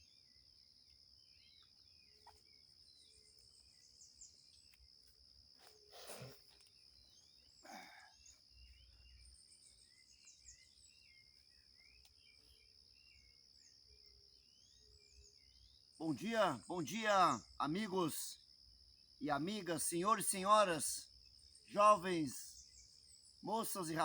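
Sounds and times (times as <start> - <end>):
birds chirping: 0.0 - 24.0
insect drone: 0.0 - 24.0.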